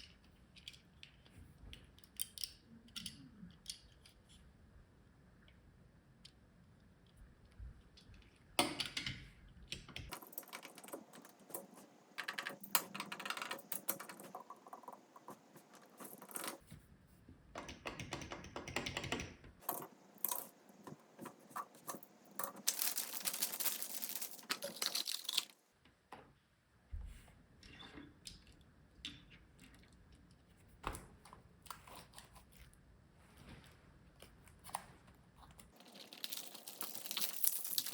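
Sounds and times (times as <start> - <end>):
packaging clicking and crinkling: 10.1 - 16.6, 19.6 - 25.6, 35.8 - 37.9.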